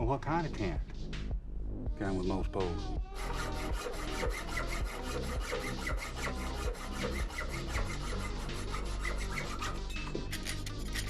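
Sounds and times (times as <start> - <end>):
hacksaw sawing through metal: 3.1 - 11.0.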